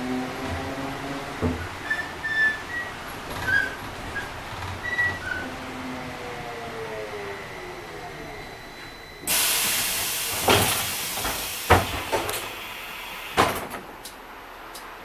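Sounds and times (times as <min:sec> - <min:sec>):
bus doors clunking open: 0:00.5 - 0:05.5, 0:09.2 - 0:14.2
compressed air hissing: 0:09.3 - 0:13.4.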